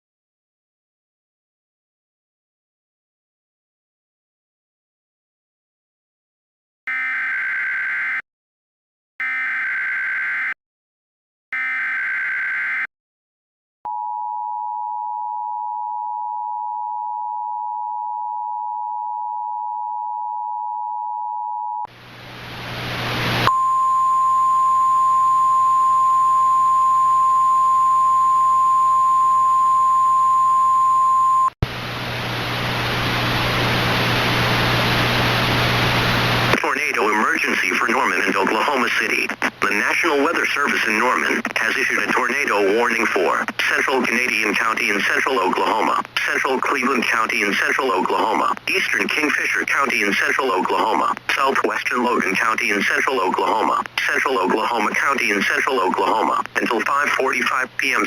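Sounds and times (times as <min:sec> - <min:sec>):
steady warning tone: 0:23.4 - 0:31.5
two-tone attention signal: 0:23.5 - 0:31.5
radio static hiss: 0:32.8 - 0:58.0.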